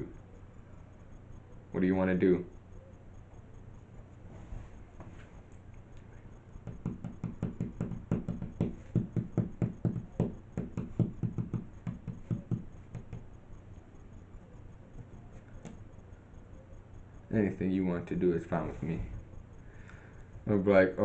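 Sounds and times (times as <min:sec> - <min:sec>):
fingers tapping on touchscreen: 0:06.6 - 0:13.3.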